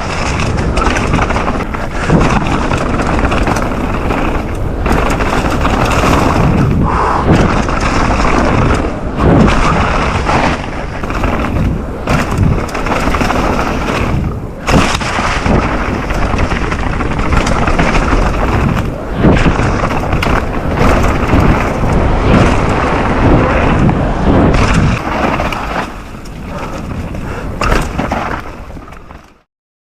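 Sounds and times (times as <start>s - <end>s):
bike tyres rolling over rocks: 0.0s - 29.5s.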